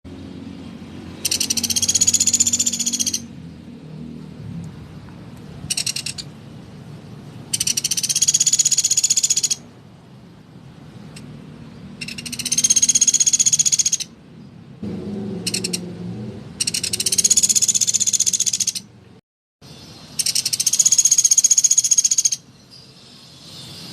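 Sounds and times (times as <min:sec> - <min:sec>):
woodpecker rattling trills: 0:01.2 - 0:03.3, 0:05.7 - 0:06.3, 0:07.5 - 0:09.6, 0:12.0 - 0:14.2, 0:15.4 - 0:15.8, 0:16.6 - 0:18.9, 0:20.2 - 0:22.5.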